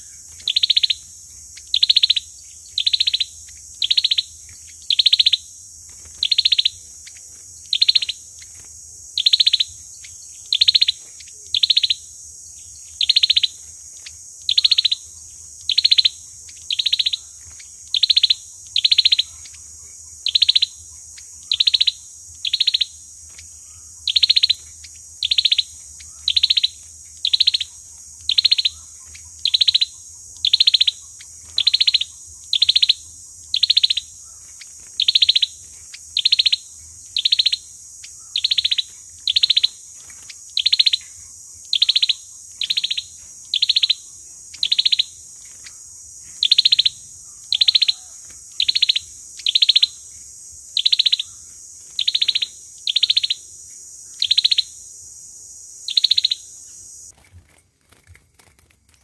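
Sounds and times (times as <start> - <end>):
songbird short call: 40.6 - 50.0.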